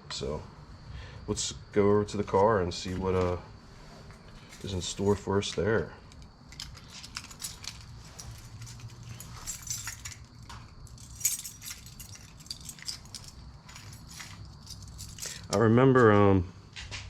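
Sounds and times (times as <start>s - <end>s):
low steady hum: 0.0s - 17.0s
small metal items clinking: 4.3s - 15.7s.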